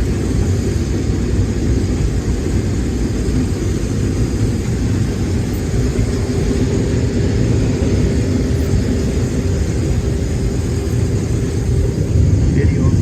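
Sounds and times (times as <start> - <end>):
combine harvester drone: 0.0 - 13.0.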